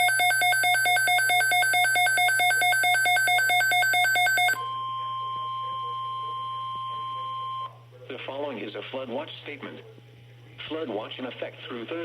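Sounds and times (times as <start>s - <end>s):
steady alarm tone: 0.0s - 7.7s.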